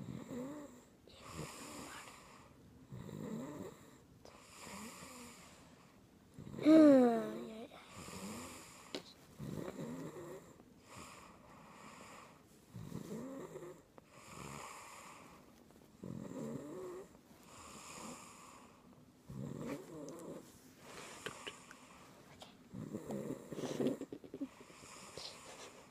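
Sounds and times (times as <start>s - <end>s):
soft breaths: 0.0s - 25.9s
snoring with wavering pitch: 2.9s - 3.9s, 16.0s - 18.7s.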